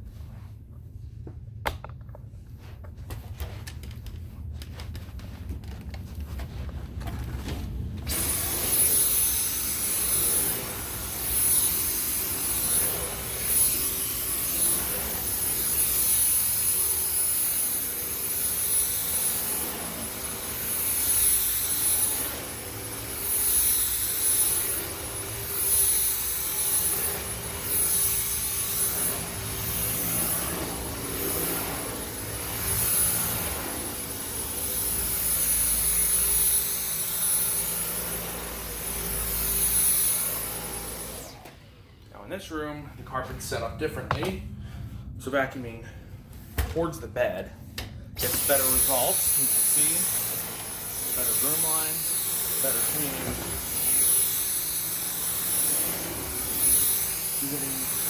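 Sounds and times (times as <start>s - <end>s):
vacuum cleaner motor whine: 6.4s - 42.2s, 48.2s - 58.0s.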